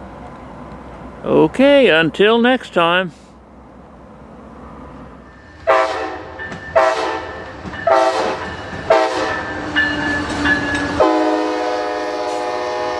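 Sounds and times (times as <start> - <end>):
locomotive air horn blasts: 5.6 - 9.5, 11.0 - 12.9.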